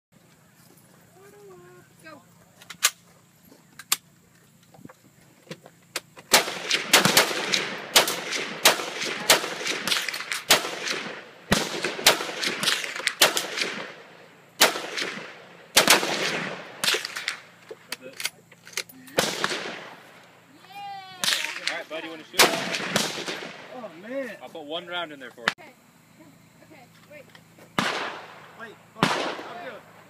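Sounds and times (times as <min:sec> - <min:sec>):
rifle shots with echo: 0:06.3 - 0:17.6, 0:19.2 - 0:20.1, 0:21.2 - 0:23.9, 0:27.8 - 0:29.9.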